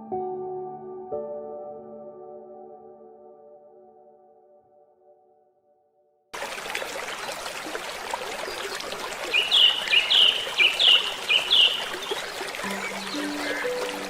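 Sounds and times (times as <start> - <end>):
bird two-part calls: 9.4 - 14.0.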